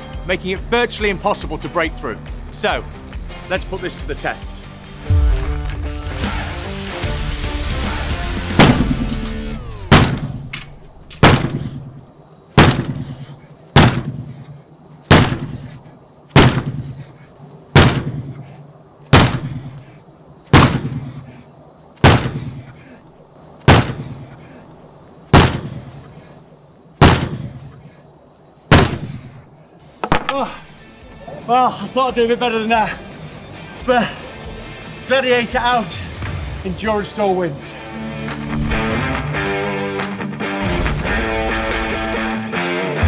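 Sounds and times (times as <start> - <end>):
sledgehammer banging on door: 13.8 - 14.2, 15.1 - 15.5, 17.8 - 18.1, 22.0 - 22.4, 23.7 - 24.0, 25.4 - 25.7, 27.0 - 27.4.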